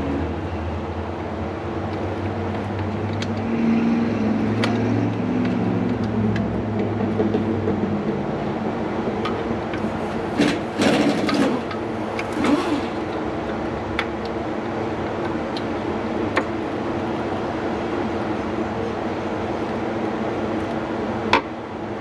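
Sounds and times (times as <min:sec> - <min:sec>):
steady background hum: 0:00.0 - 0:22.0.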